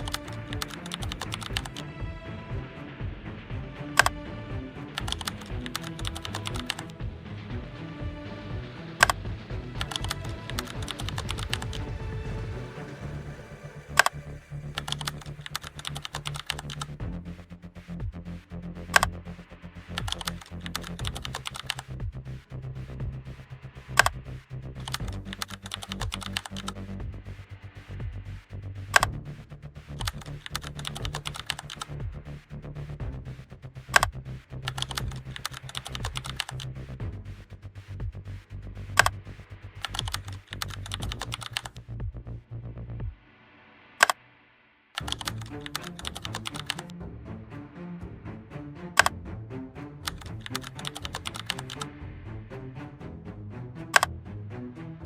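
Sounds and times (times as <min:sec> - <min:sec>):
clicky percussion: 0:00.0 - 0:02.2, 0:03.9 - 0:04.2, 0:04.9 - 0:07.1, 0:09.0 - 0:12.9, 0:13.9 - 0:17.2, 0:18.9 - 0:19.2, 0:19.9 - 0:22.2, 0:24.8 - 0:27.1, 0:28.9 - 0:29.2, 0:29.9 - 0:32.2, 0:33.9 - 0:37.2, 0:38.9 - 0:39.2, 0:39.8 - 0:41.9, 0:45.0 - 0:46.9, 0:49.0 - 0:49.2, 0:50.0 - 0:52.0, 0:53.9 - 0:54.1
electronic bass line: 0:00.0 - 0:43.2, 0:45.0 - 0:54.4.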